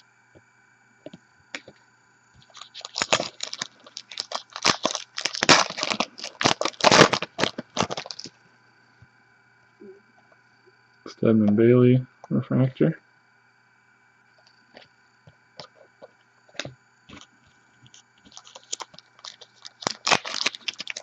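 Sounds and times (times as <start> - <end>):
plastic packaging crackling: 2.4 - 8.4, 17.9 - 21.0.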